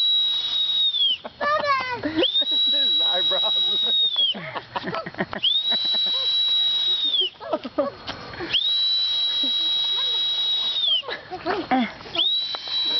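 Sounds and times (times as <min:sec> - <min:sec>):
toy bubble whistle blasts: 0:00.0 - 0:01.3, 0:05.5 - 0:07.4, 0:08.5 - 0:11.0, 0:12.2 - 0:12.9
voices: 0:00.0 - 0:12.9.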